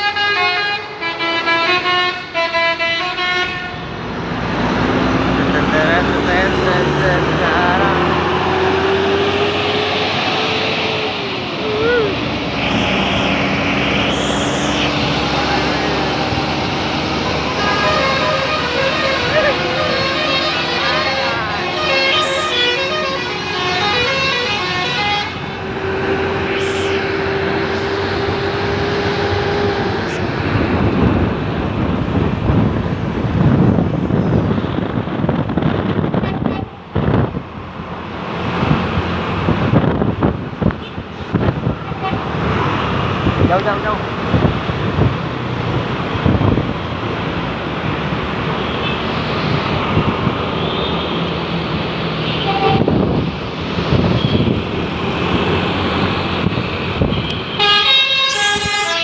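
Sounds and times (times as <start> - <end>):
multi-tone air horn: 0.0 - 3.8, 17.4 - 25.5, 26.4 - 27.1, 52.2 - 53.0, 57.5 - 59.0
bus engine and road noise: 0.0 - 59.0.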